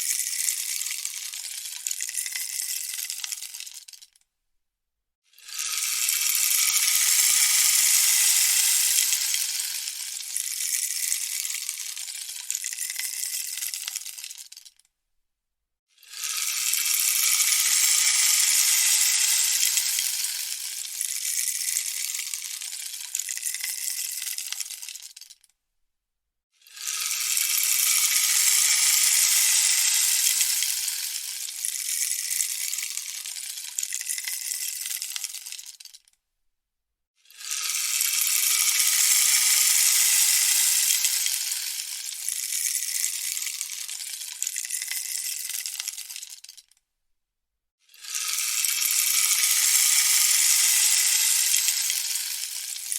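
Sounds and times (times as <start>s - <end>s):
rainstick pellets pattering: 0.0s - 4.2s, 5.4s - 14.8s, 16.1s - 25.5s, 26.7s - 36.1s, 37.4s - 46.8s, 48.0s - 52.9s.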